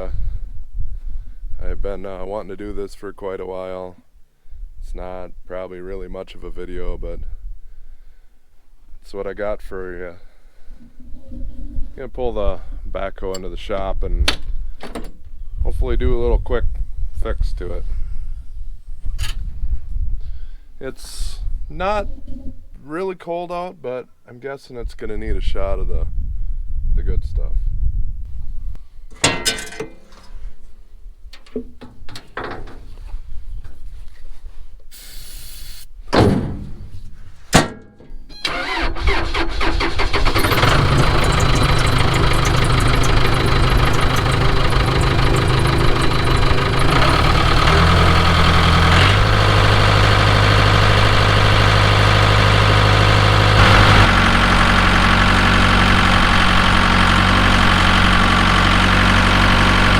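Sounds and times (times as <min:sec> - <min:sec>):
hiss: 0:34.9 - 0:35.9
diesel engine cranking and running: 0:38.4 - 0:59.9.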